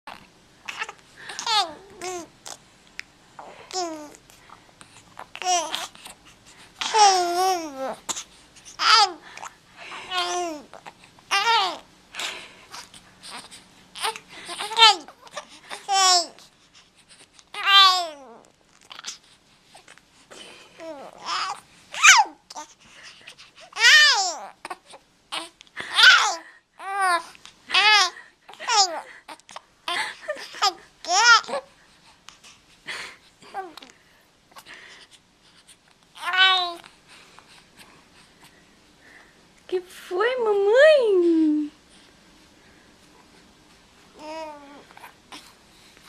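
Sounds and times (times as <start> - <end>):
baby babbling: 0.1 - 2.6, 3.4 - 4.2, 5.2 - 6.1, 6.8 - 9.4, 10.0 - 11.8, 12.8 - 16.4, 17.5 - 19.2, 20.8 - 22.7, 23.8 - 29.6, 33.5 - 33.9, 36.2 - 36.9, 44.2 - 45.5.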